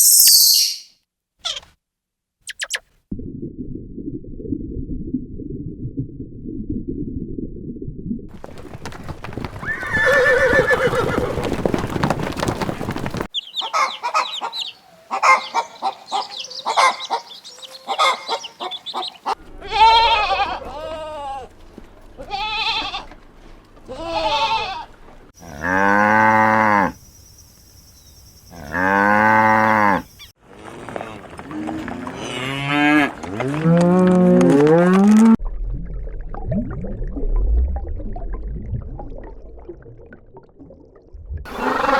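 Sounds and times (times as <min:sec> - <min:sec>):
farm animal calls: 0:13.4 - 0:21.6, 0:41.5 - 0:41.9.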